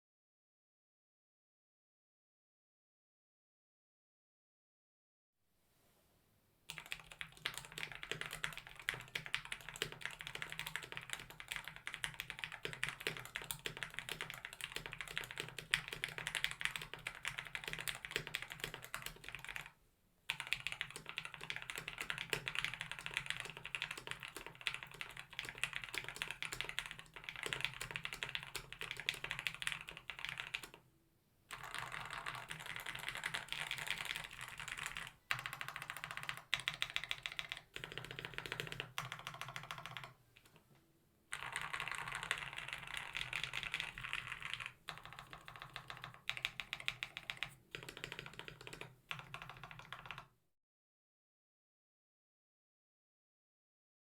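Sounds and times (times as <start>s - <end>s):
fast mechanical keyboard typing: 6.7s - 19.7s, 20.3s - 30.8s, 31.5s - 40.6s, 41.3s - 50.3s.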